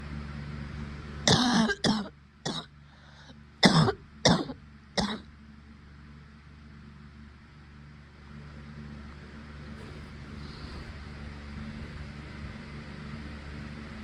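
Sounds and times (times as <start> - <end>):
woman coughing: 1.3 - 2.7, 3.6 - 5.3.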